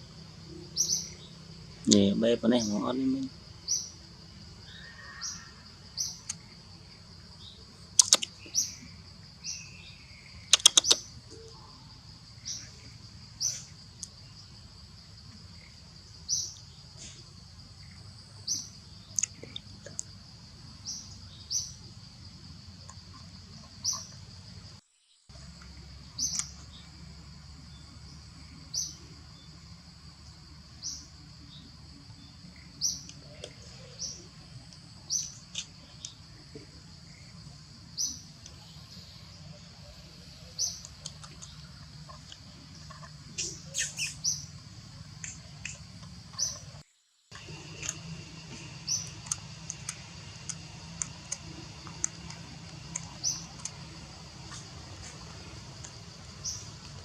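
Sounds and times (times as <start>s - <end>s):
steady high hiss: 0.0s - 57.0s
sharp clicks: 8.0s - 8.6s, 10.5s - 11.2s, 47.3s - 48.0s, 48.9s - 53.8s.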